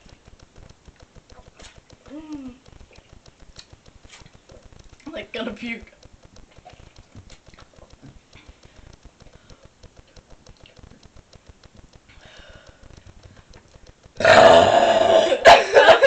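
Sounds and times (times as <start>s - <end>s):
faint clicking: 0.0s - 14.2s
woman burping: 14.2s - 16.0s.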